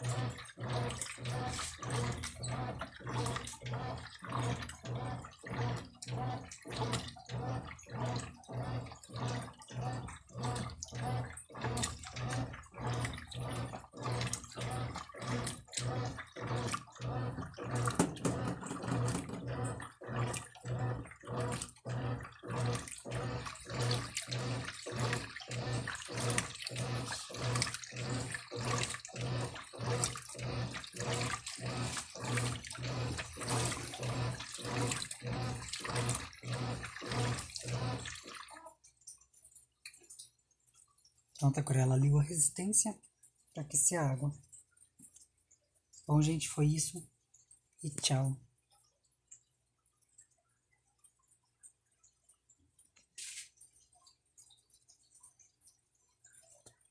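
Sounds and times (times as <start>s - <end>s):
washing machine motor hum: 0.0s - 39.4s, 40.1s - 43.0s, 43.6s - 44.6s, 45.5s - 50.3s
water sloshing: 0.0s - 50.3s.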